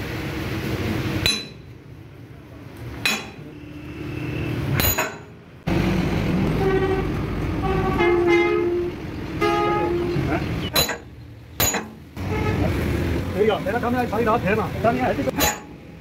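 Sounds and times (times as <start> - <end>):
road traffic noise: 0.0 - 16.0
sharp metallic clanks: 1.2 - 1.7, 3.0 - 3.5, 4.7 - 5.4, 10.7 - 12.1, 15.3 - 15.8
vehicle horns honking: 6.5 - 10.4, 12.2 - 12.8.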